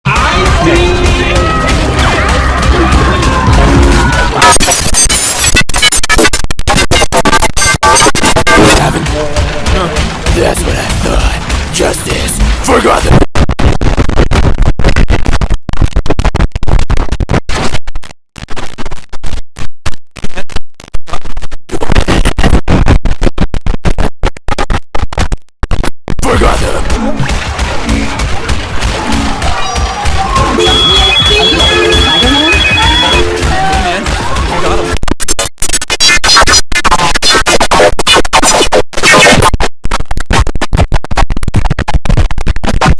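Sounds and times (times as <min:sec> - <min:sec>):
distorted stuttering computer shutdown sound: 0:00.4 - 0:15.2, 0:26.2 - 0:39.6.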